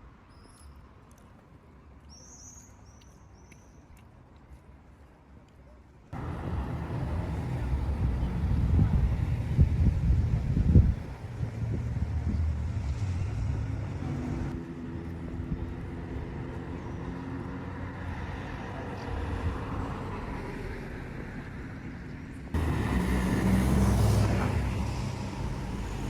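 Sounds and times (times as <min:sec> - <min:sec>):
road traffic rumble: 0:06.1 - 0:26.0.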